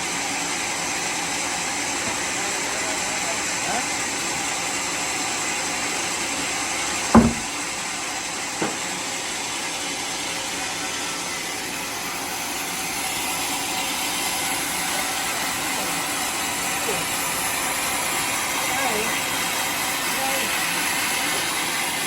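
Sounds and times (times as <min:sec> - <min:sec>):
sawmill machinery hissing: 0:00.5 - 0:22.0
sharp knocks: 0:07.2 - 0:07.6.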